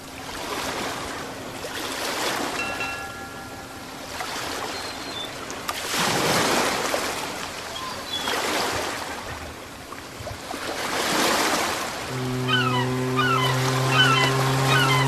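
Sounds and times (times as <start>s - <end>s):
ocean waves washing: 0.0s - 15.0s.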